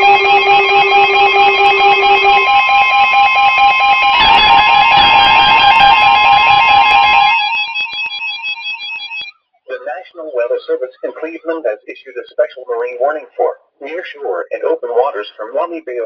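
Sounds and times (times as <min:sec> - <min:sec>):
steady alert tone: 0:00.0 - 0:09.9
weather radio alarm beeps: 0:00.0 - 0:10.0.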